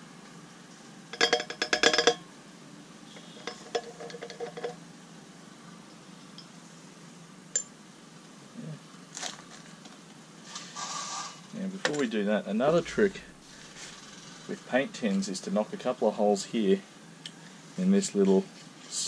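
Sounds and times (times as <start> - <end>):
glass jar and metal tin clinking: 1.2 - 2.2, 3.2 - 4.8.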